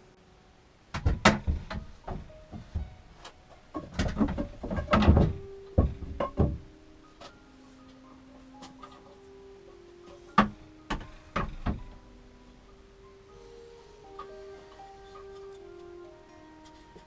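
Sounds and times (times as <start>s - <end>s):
quiet held notes: 0.0s - 17.0s
objects knocking and clattering: 0.9s - 2.9s, 3.7s - 6.7s, 10.4s - 12.0s.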